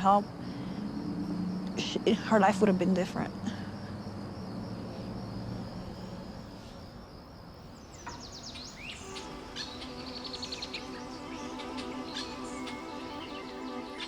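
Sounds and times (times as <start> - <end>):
birds chirping: 0.0 - 14.0
insects trilling: 0.0 - 14.0
background music: 9.0 - 14.0.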